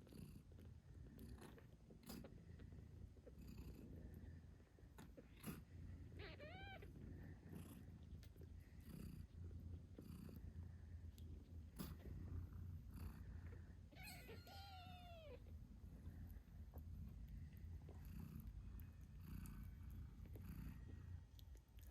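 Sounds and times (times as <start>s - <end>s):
cat purring: 0.0s - 21.9s
kittens mewing: 6.2s - 6.9s, 13.9s - 15.5s.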